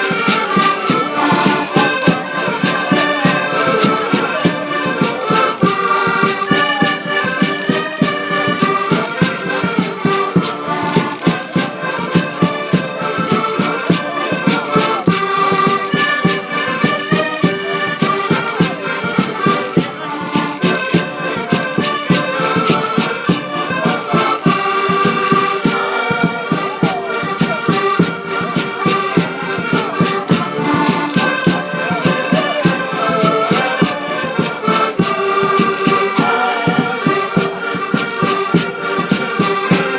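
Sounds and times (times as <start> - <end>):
live folk band playing: 0.0 - 39.9.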